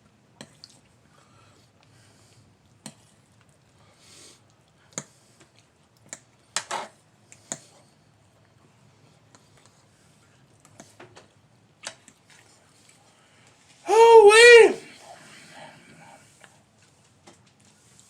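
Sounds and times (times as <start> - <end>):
soft rustle: 16.2 - 18.0.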